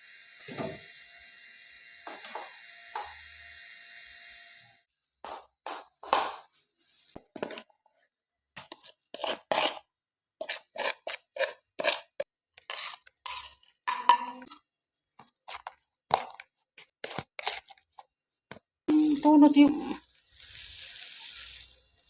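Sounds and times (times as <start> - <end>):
utensils and dishes clinking: 13.3 - 14.6.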